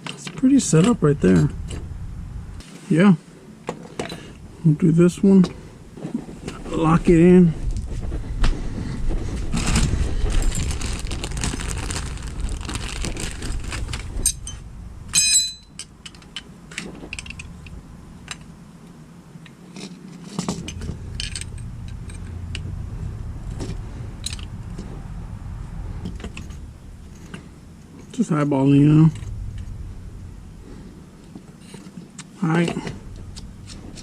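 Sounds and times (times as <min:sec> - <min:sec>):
low background rumble: 0:00.3 - 0:19.6, 0:20.3 - 0:34.0
metal tools clinking and rattling: 0:13.7 - 0:17.7, 0:19.8 - 0:22.6, 0:26.0 - 0:27.4
ringing metallic clink: 0:14.2 - 0:15.9.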